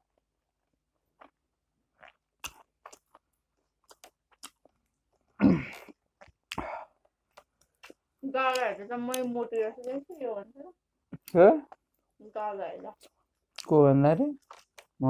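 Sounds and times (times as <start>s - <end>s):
mouth clicks and chewing: 1.2s - 1.4s, 2.0s - 10.2s, 11.2s - 12.0s, 12.9s - 13.8s, 14.4s - 15.0s.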